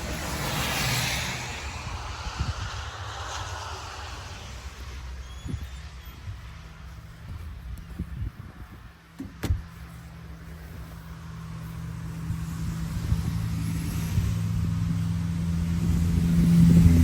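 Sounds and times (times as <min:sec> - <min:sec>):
engine running: 0:00.0 - 0:05.3, 0:09.0 - 0:17.0.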